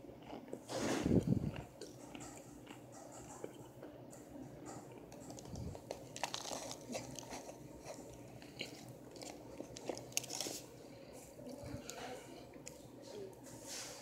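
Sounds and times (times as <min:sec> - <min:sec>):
cornstarch crunching between teeth: 0:05.2 - 0:10.6.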